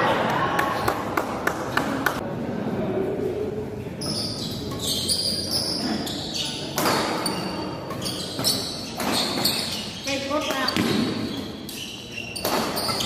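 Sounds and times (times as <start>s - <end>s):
murmur of spectators: 0.0s - 10.0s
sneaker squeaks on court: 4.0s - 13.0s
racket hitting shuttlecock: 6.7s - 9.7s, 12.4s - 13.0s.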